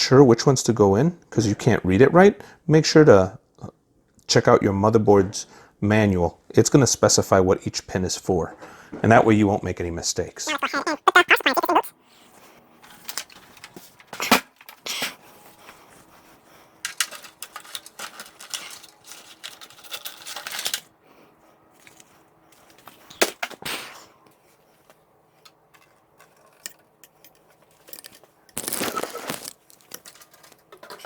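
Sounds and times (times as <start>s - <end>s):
rustling and rattling parts: 12.8s - 14.8s, 15.6s - 20.9s, 21.7s - 23.6s, 24.8s - 31.0s.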